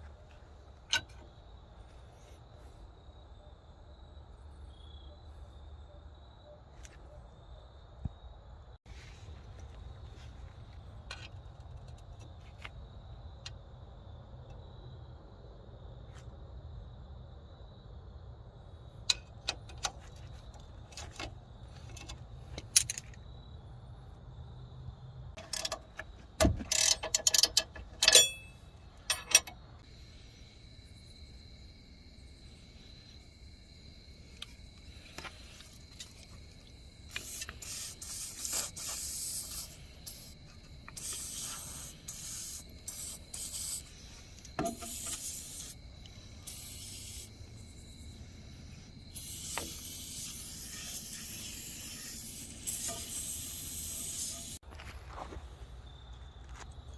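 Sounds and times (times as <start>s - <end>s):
metal clinks and knocks: 20.9s - 23.2s, 25.4s - 29.6s.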